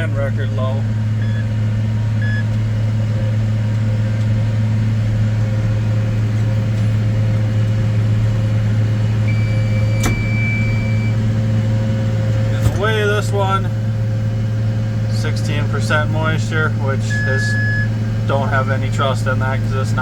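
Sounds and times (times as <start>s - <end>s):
tractor engine low hum: 0.0s - 20.0s.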